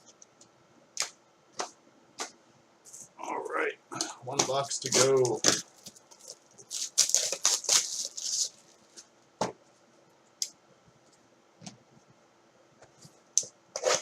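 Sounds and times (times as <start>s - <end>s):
packaging tearing and rustling: 4.8s - 9.0s.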